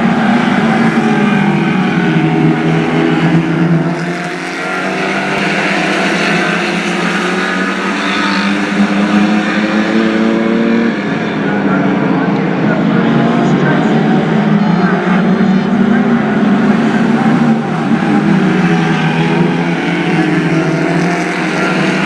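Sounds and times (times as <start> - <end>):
race car engines running: 0.0 - 22.0.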